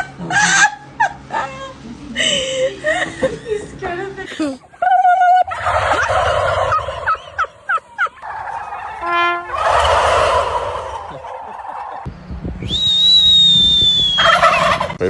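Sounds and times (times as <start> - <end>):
turkeys gobbling: 5.4 - 8.2, 9.5 - 11.4, 14.2 - 15.0.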